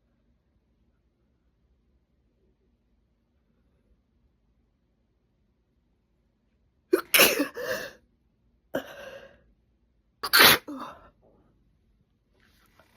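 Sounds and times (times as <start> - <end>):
woman sneezing: 7.0 - 8.0, 10.2 - 11.0.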